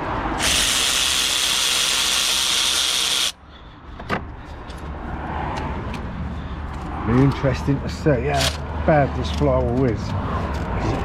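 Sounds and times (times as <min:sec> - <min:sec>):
power tool running: 0:00.4 - 0:03.4.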